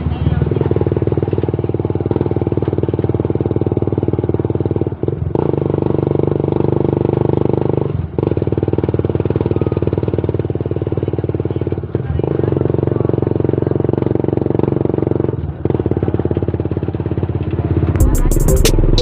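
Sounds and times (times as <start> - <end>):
vehicle engine running: 0.0 - 19.0.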